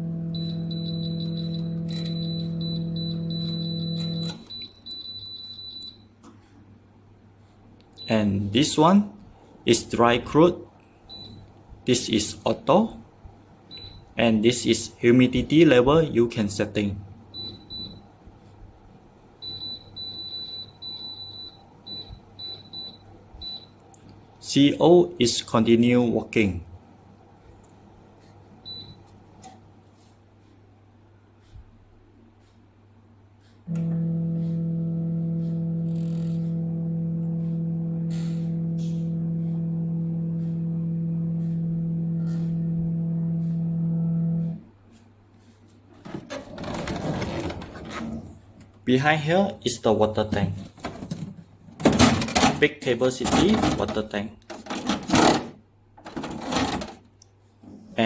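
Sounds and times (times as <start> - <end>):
control panel beeping: 0.0 - 6.0, 33.7 - 44.6
dehumidifier humming: 0.0 - 58.0.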